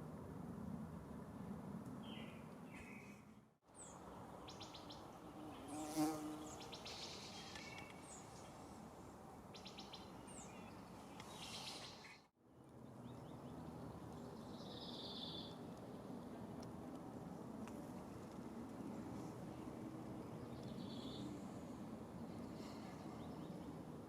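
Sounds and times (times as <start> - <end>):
flying insect buzzing: 5.3 - 6.6
faint bird chirps and trills: 13.0 - 15.6, 20.3 - 21.4.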